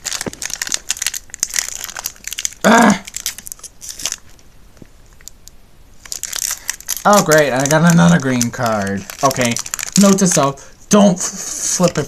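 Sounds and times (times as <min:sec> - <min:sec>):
foil wrapper crinkling and tearing: 0:00.0 - 0:04.4, 0:06.0 - 0:10.6, 0:11.4 - 0:12.0
short vocal sound: 0:02.6 - 0:03.1.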